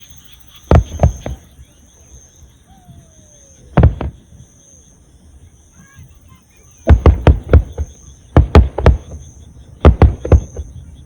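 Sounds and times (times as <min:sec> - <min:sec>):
fireworks bangs: 0:00.7 - 0:01.6, 0:03.7 - 0:04.5, 0:06.8 - 0:11.0.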